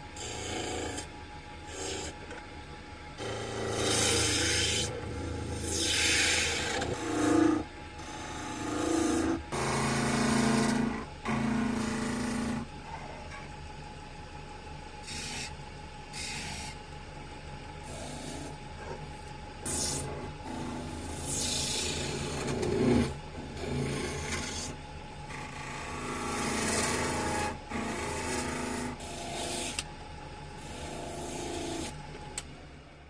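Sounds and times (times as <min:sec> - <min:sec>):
machine motor running: 0:01.7 - 0:02.4, 0:03.2 - 0:12.8, 0:17.8 - 0:29.9.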